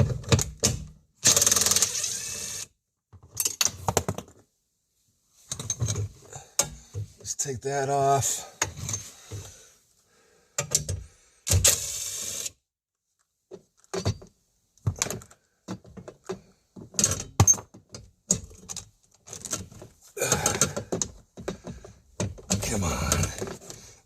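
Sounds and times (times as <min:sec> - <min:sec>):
tools and plastic parts handled: 0:05.5 - 0:07.1, 0:13.1 - 0:23.8.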